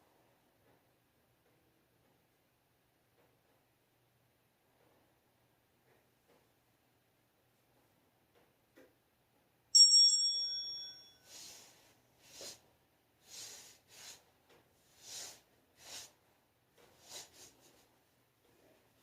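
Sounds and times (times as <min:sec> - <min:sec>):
small timer bell ringing: 0:09.7 - 0:11.6
soft hissy noises: 0:10.7 - 0:19.0.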